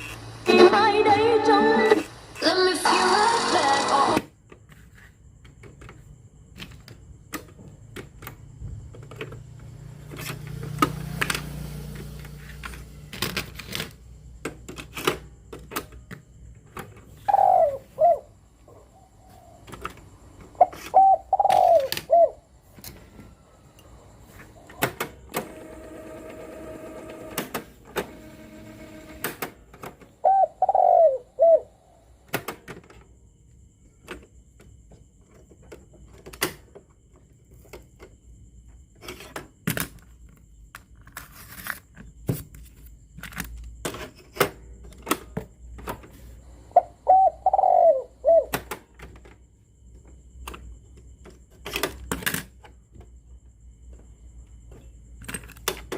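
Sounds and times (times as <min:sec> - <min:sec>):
dove cooing: 0:17.2 - 0:19.7, 0:20.5 - 0:22.5, 0:30.2 - 0:31.9, 0:46.7 - 0:48.6.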